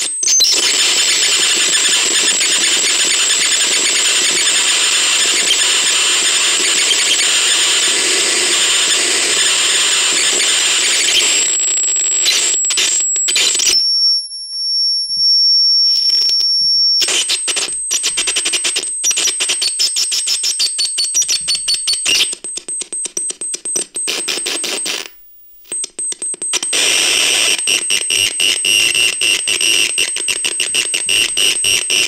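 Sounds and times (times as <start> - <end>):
harsh crackly speaker noise: 0.0 - 13.8, 26.6 - 32.0
high-pitched electronic beep: 0.0 - 22.4.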